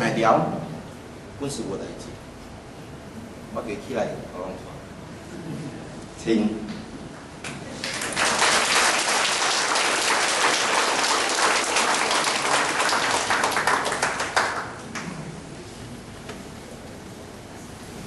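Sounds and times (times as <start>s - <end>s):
people clapping: 7.4s - 15.3s.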